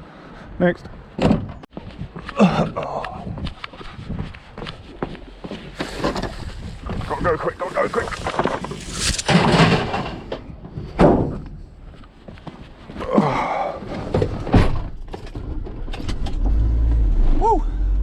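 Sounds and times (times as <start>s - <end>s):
scrap metal scraping and rattling: 5.7s - 10.6s.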